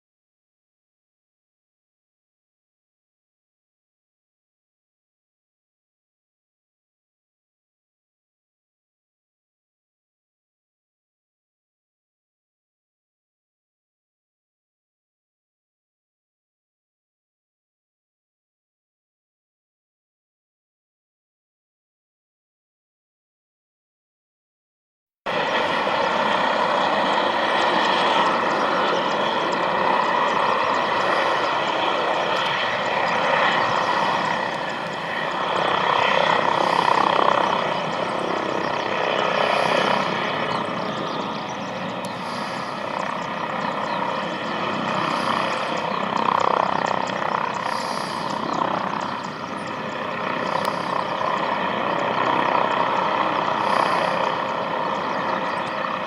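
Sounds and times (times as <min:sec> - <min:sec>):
aircraft engines running: 0:25.3 - 0:56.0.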